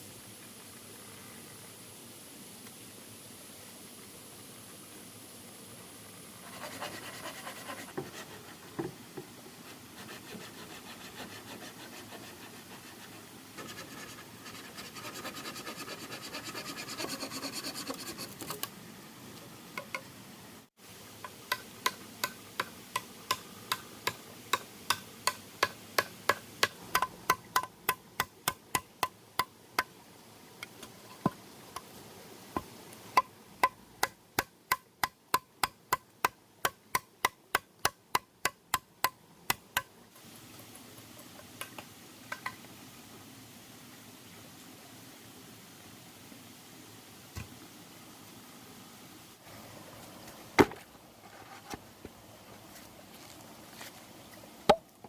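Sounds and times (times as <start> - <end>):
hand tool scraping wood: 6.4 - 9.0, 9.6 - 18.7.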